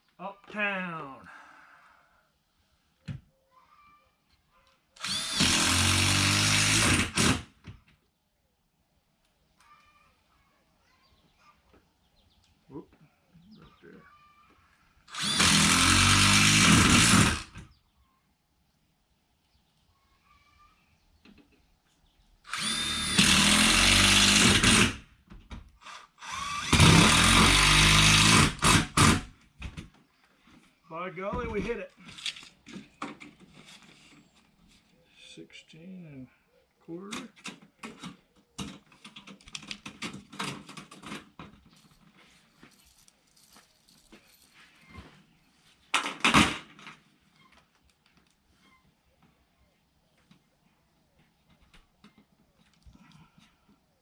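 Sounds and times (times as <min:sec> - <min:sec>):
drill click: 0:05.0 - 0:07.4, 0:15.1 - 0:17.5, 0:22.5 - 0:24.8
power drill driving screw: 0:05.0 - 0:07.6, 0:15.1 - 0:17.7, 0:22.5 - 0:25.0, 0:25.8 - 0:29.4.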